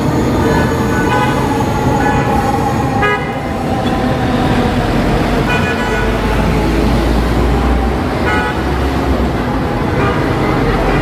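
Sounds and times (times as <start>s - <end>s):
rumble of engines and tyres: 0.0s - 11.0s
vehicle horns honking: 8.2s - 8.7s.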